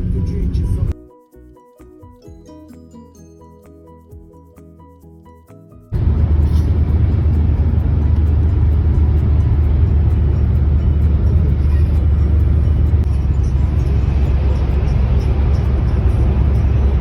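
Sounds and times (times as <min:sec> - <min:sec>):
car engine and road rumble: 0:00.0 - 0:01.0, 0:05.9 - 0:17.0.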